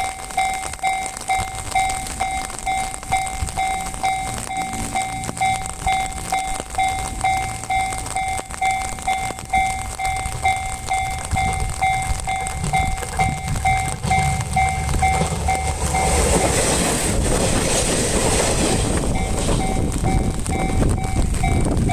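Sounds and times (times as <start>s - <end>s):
level crossing bell dinging: 0.0s - 16.2s
train rumbling past: 0.0s - 21.9s.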